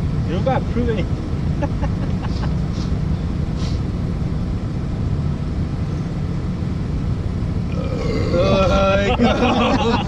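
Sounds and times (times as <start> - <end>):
steady low rumble: 0.0 - 10.0
faint short hisses: 2.7 - 3.9.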